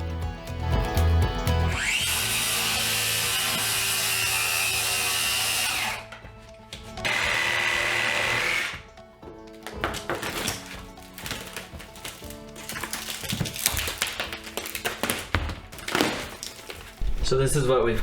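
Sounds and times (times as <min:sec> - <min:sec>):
background music: 0:00.0 - 0:18.0
power tool whining: 0:01.6 - 0:09.0.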